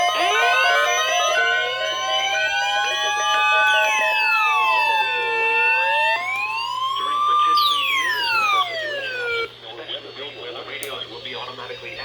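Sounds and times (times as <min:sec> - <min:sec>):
electronic sirens winding: 0:00.0 - 0:09.6.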